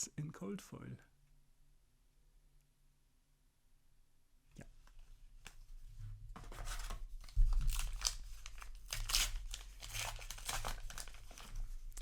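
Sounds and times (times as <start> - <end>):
paper wrapper tearing and crinkling: 6.5 - 12.0.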